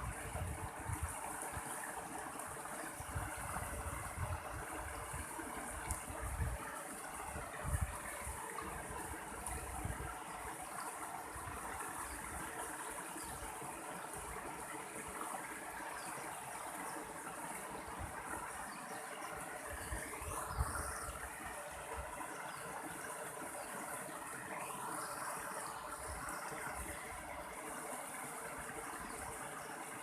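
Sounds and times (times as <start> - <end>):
stream water flowing: 0.0 - 30.0.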